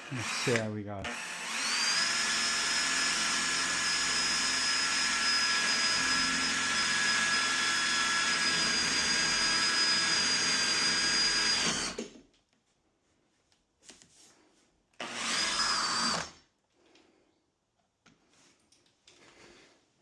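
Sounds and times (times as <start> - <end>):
power drill whining: 0.0 - 12.2, 15.0 - 16.5.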